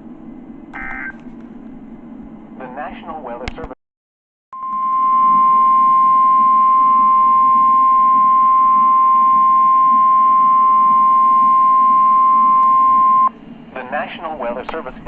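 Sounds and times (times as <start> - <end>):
steady alarm tone: 4.6 - 13.3.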